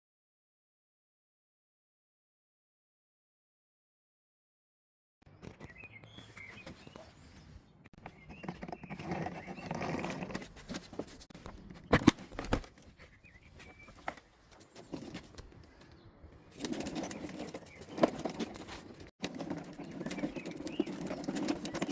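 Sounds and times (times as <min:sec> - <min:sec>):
birds cooing and chirping: 0:12.8 - 0:21.9.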